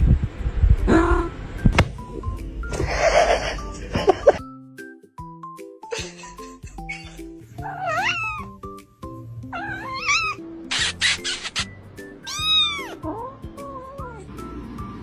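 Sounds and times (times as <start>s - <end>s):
background music: 0.2s - 15.0s
cat meowing: 7.6s - 8.5s, 9.6s - 11.6s, 12.3s - 14.3s.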